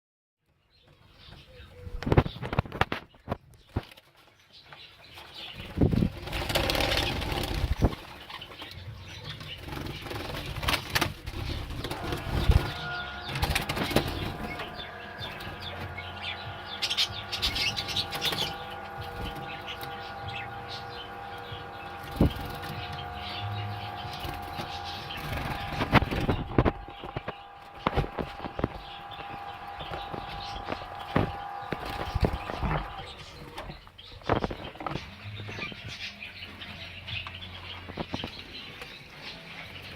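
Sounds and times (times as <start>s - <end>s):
canaries chirping: 0.5s - 39.9s
canary wings flapping: 5.2s - 20.2s, 21.1s - 23.0s, 24.0s - 33.1s
steady tone: 11.8s - 33.6s.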